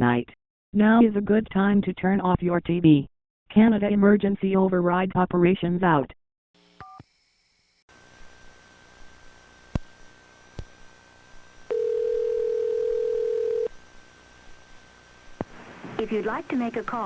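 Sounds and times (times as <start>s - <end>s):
telephone line hiss: 11.7s - 13.7s
telephone ringback tone: 11.7s - 13.7s.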